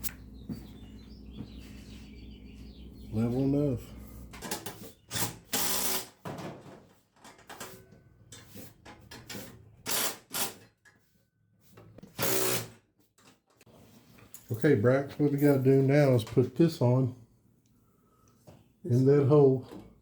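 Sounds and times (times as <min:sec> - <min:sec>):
electric drill driving bolts: 0:04.6 - 0:06.2, 0:09.8 - 0:10.7, 0:12.0 - 0:12.8.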